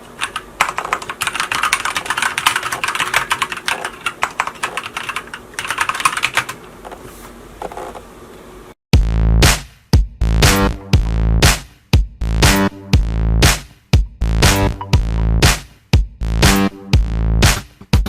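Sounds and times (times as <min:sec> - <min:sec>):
mechanical keyboard typing: 0:00.0 - 0:07.0
electronic music with a beat: 0:09.0 - 0:18.0.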